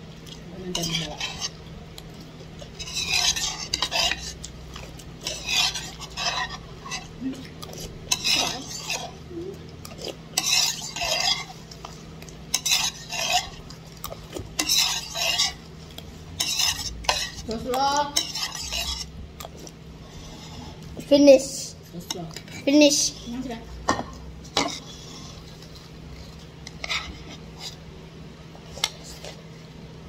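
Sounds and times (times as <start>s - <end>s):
spoon scraping a bowl: 0.7s - 1.6s, 2.6s - 9.2s, 9.9s - 15.7s, 16.4s - 20.8s, 22.4s - 27.8s, 28.6s - 29.5s.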